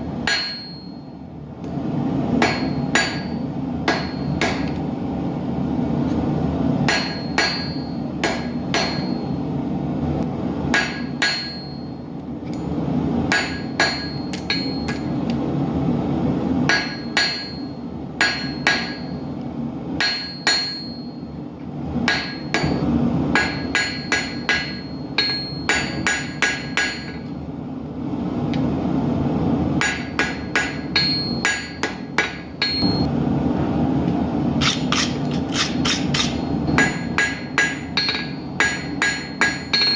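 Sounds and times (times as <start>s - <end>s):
hammer striking steel on anvil: 0.2s - 1.2s, 2.4s - 4.8s, 6.8s - 9.4s, 10.7s - 12.6s, 13.3s - 15.2s, 16.7s - 19.3s, 20.0s - 21.3s, 22.0s - 27.3s, 29.8s - 33.1s, 34.6s - 39.9s.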